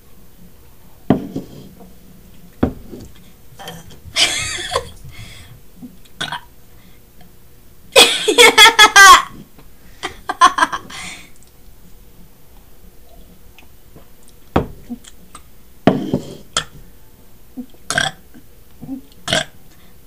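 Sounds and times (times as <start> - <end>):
person burping: 6.2 - 6.5, 17.6 - 18.2, 18.8 - 19.6.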